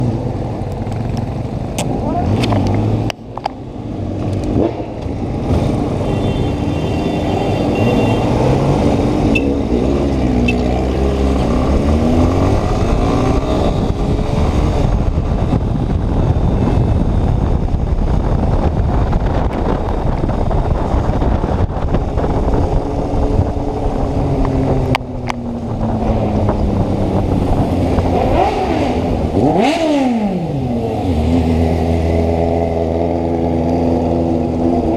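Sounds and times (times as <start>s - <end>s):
motorcycle engine revving: 0.0s - 34.9s
wind noise: 10.9s - 34.9s.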